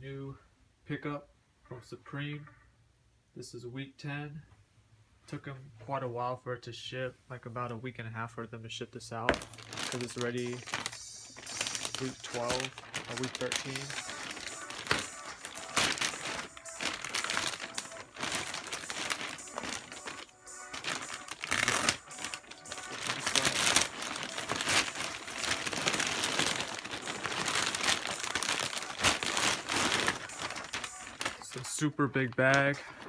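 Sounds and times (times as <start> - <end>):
plastic bag crinkling: 9.3 - 33.0.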